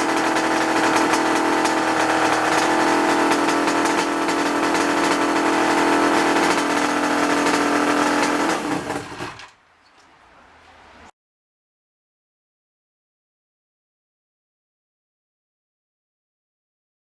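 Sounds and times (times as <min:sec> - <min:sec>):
two-stroke engine idling: 0:00.0 - 0:11.1.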